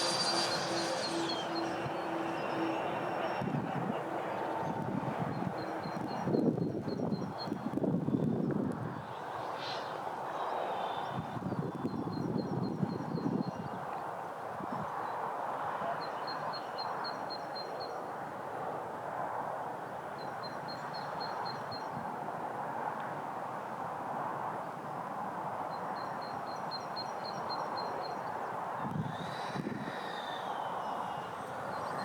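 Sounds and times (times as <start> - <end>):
steady rushing noise: 0.0 - 4.6, 28.6 - 32.0.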